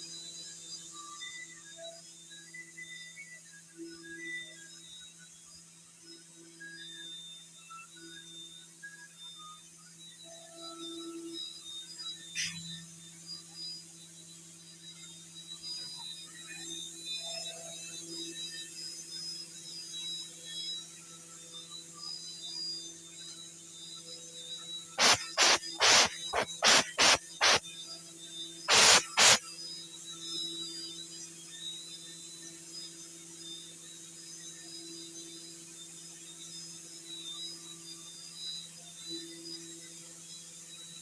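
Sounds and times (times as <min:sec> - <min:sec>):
milling machine humming and whining: 0:10.4 - 0:35.7
short loud hissing bursts: 0:25.0 - 0:27.6, 0:28.7 - 0:29.4.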